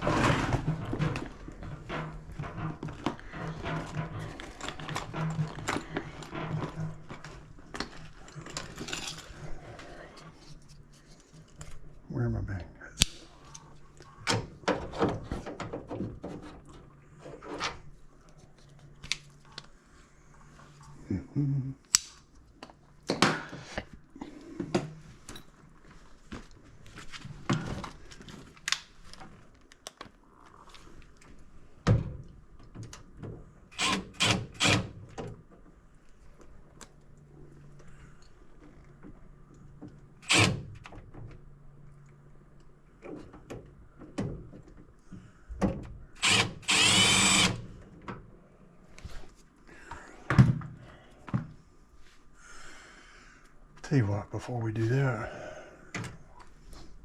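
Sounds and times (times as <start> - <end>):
power driver whirring: 33.8 - 35.0, 40.2 - 40.7, 46.2 - 47.8.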